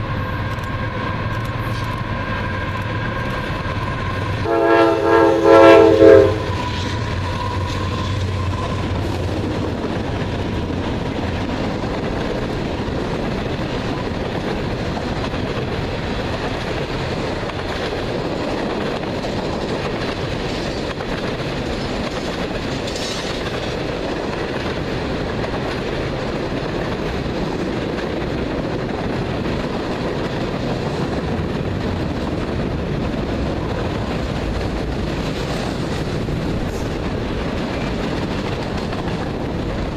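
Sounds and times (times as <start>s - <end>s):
low locomotive hum: 0.0s - 39.9s
train wheels rolling on rails: 0.0s - 39.9s.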